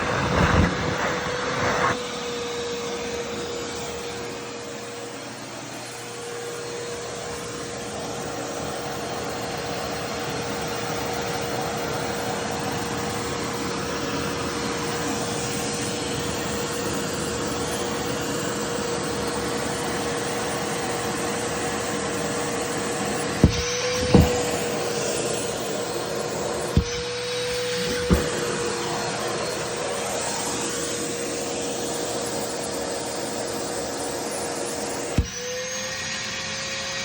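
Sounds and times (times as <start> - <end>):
vacuum cleaner whining: 0.0 - 37.0
sharp knocks: 23.4 - 24.5, 26.8 - 27.1, 27.8 - 28.4.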